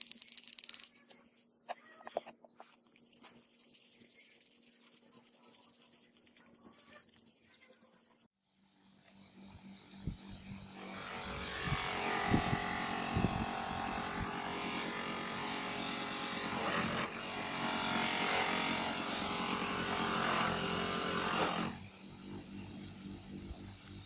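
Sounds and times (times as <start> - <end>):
electric power tool buzzing: 10.7 - 23.1.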